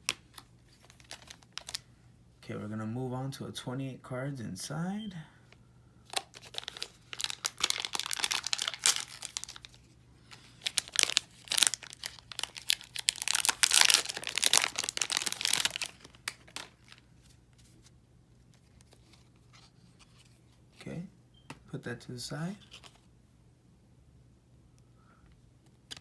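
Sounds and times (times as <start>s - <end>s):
wrapper tearing and crinkling: 0.0s - 1.8s, 6.1s - 17.0s.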